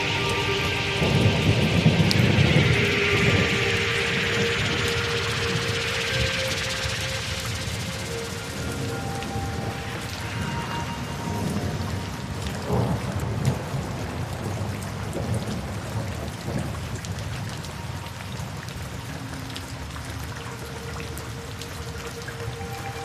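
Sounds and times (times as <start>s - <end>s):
low rumble of thunder: 0.0s - 18.1s
steady rain falling: 0.0s - 23.0s.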